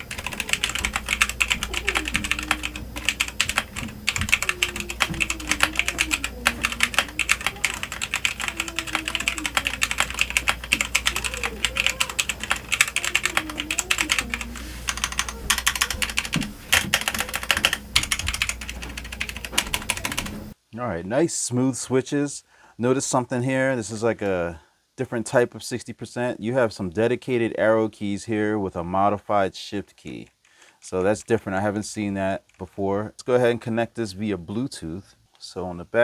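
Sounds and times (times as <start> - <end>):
fast typing on mechanical keyboard: 0.0 - 20.6.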